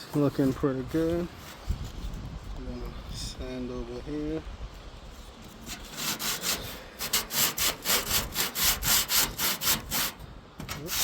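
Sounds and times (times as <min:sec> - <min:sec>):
hand sanding rusted metal: 0:05.4 - 0:11.0.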